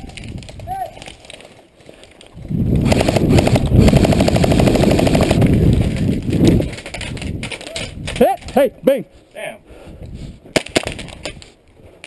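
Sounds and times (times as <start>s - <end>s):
airsoft gun firing full auto: 2.8s - 5.5s.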